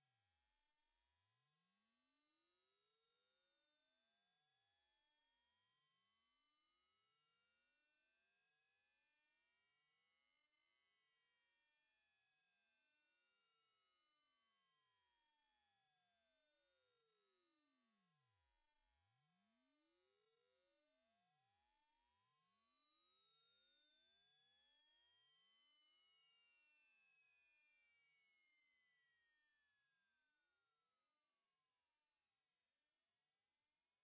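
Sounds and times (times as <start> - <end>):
high-pitched sine tone: 0.0 - 28.5.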